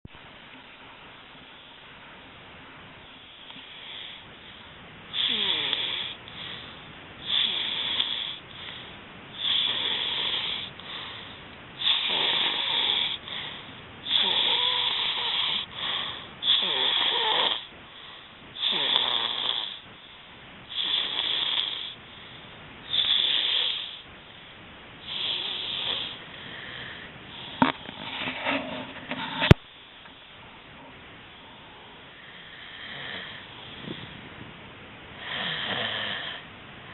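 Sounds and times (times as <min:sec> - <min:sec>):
loud snoring: 0:05.1 - 0:06.5, 0:07.2 - 0:08.4, 0:09.4 - 0:11.0, 0:11.8 - 0:17.7, 0:18.6 - 0:19.9, 0:20.7 - 0:22.0, 0:22.9 - 0:24.0, 0:25.0 - 0:27.8, 0:32.2 - 0:34.1, 0:35.2 - 0:36.5.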